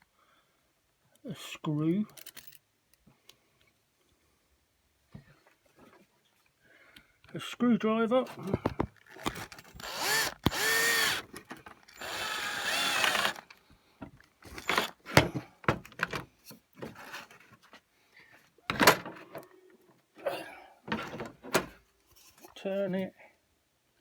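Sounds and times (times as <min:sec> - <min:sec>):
tool handling clicks and knocks: 0:08.4 - 0:17.4
power drill motor whine: 0:09.2 - 0:11.3, 0:12.0 - 0:13.4, 0:14.5 - 0:15.0.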